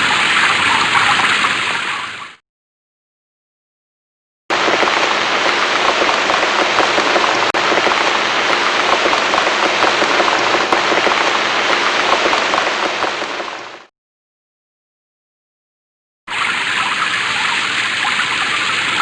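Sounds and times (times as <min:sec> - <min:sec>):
dense rainfall: 0:04.5 - 0:13.9.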